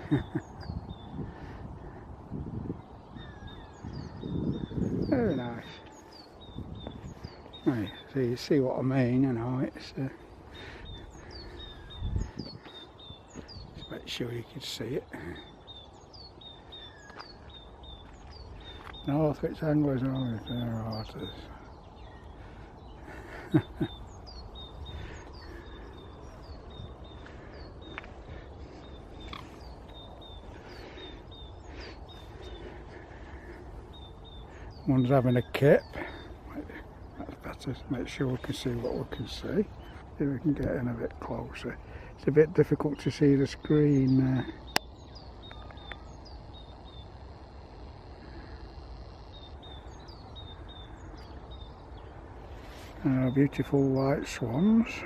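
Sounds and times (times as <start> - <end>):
steady low rumble: 0.0 - 42.5
small birds chirping: 0.0 - 55.0.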